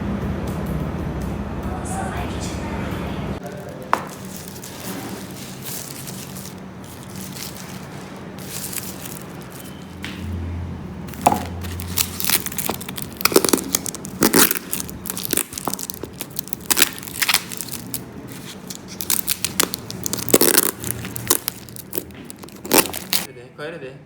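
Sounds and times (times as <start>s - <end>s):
crinkling and crackling: 3.4s - 10.4s, 11.0s - 23.3s.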